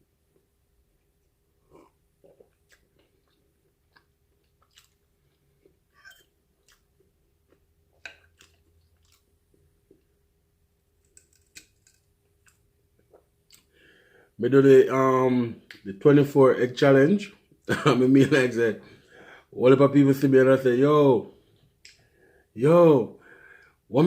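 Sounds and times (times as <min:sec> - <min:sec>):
faint chewing: 0:00.3 - 0:10.3, 0:10.9 - 0:13.8
wet mouth clicks and smacks: 0:02.2 - 0:05.0, 0:08.0 - 0:09.3.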